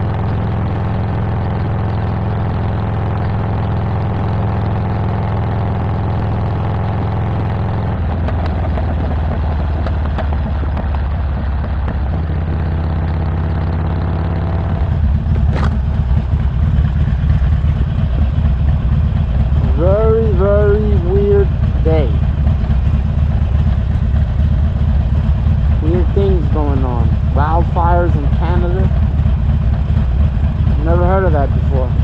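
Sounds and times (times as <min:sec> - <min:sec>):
motorcycle engine idling: 0:00.0 - 0:32.0.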